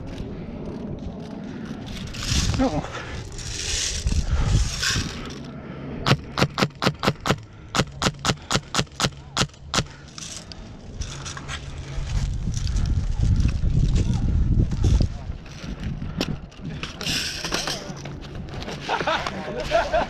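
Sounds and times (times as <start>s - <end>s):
rustle of movement: 0.0s - 5.9s, 9.9s - 20.0s.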